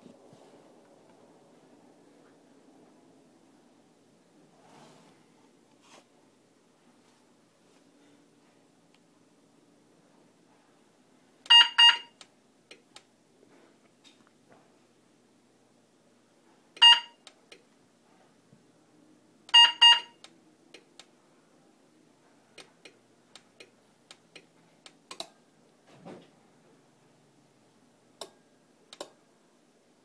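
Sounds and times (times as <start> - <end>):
car alarm chirps: 11.5 - 12.1, 16.8 - 17.2, 19.6 - 20.2.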